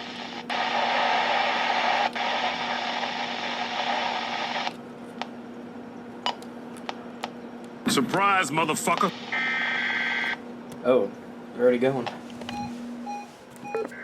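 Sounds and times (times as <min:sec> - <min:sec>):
radio static hiss: 0:00.0 - 0:04.8, 0:07.8 - 0:10.4
steady low hum: 0:00.0 - 0:14.0.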